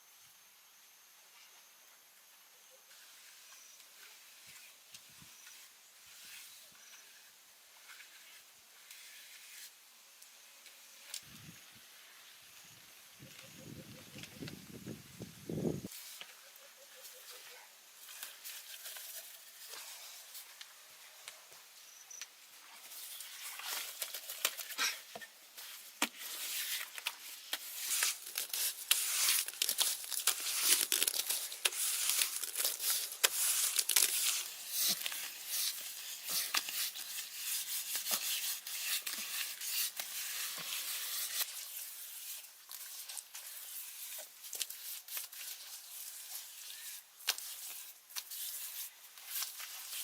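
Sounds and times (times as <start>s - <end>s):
rustling tearing with crackles: 22.8s - 50.0s.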